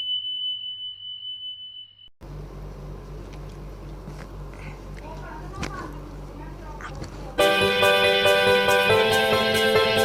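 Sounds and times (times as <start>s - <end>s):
low room hum: 2.2s - 7.4s.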